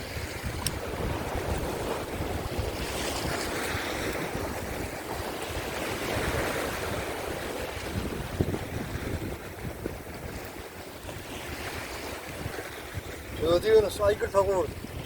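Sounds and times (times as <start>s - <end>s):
waves breaking on rocks: 0.0s - 15.0s
wind buffeting microphone: 0.0s - 15.0s.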